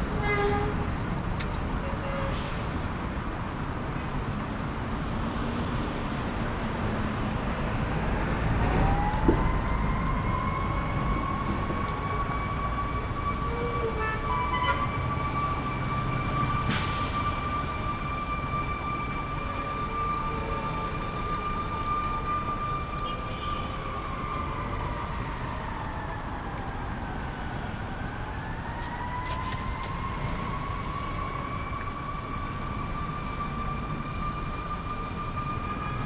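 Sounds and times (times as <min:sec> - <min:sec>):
city traffic rumble: 0:00.0 - 0:36.0
distant siren: 0:07.4 - 0:36.0.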